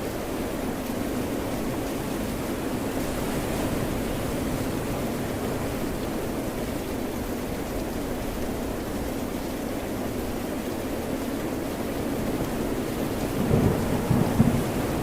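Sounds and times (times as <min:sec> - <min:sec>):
rain: 0:00.0 - 0:15.0
ocean surf: 0:01.6 - 0:07.3, 0:12.0 - 0:15.0.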